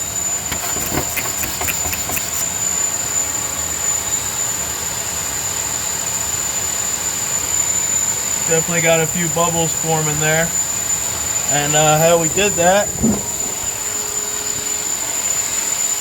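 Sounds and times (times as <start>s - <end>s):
spray bottle spritzes: 0.5s - 2.5s
vacuum cleaner blowing air: 0.5s - 2.5s.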